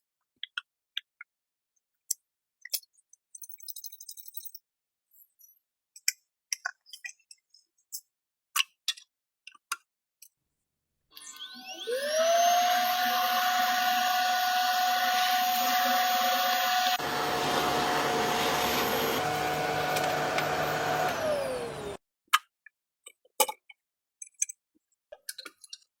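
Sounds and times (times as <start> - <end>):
electric motor whining: 11.2 - 22.0.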